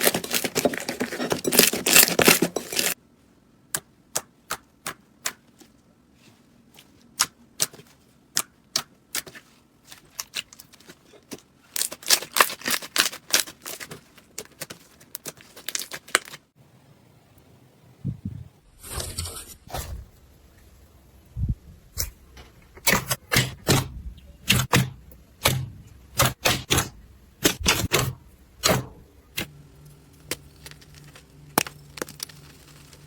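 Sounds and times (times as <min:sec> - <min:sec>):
slime crackling and popping: 0:30.1 - 0:33.0.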